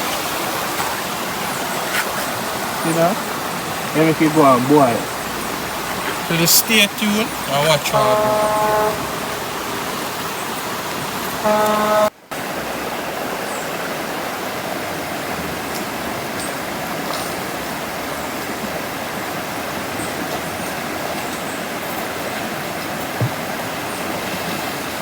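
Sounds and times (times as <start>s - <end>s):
river water rushing: 0.0s - 25.0s
horn-like toot: 6.5s - 10.0s, 11.4s - 12.2s.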